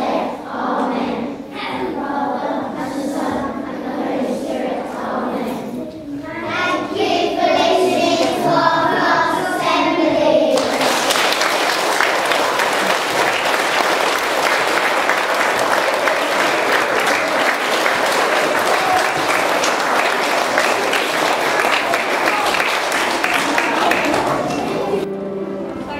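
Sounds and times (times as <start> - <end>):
children's choir singing: 0.0 - 25.9
audience applauding: 10.6 - 25.1.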